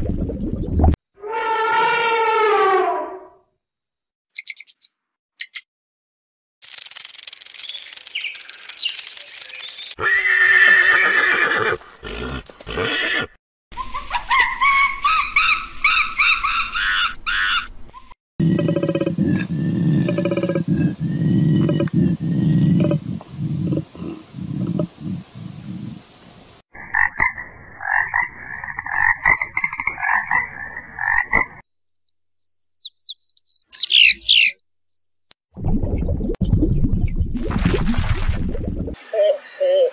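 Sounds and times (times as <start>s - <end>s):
high gliding chirping calls: 4.4s - 5.6s, 7.2s - 10.0s, 31.6s - 35.4s
horse whinnying: 10.0s - 13.4s
frogs croaking: 18.4s - 23.1s, 26.8s - 31.6s
hiss: 23.0s - 26.6s.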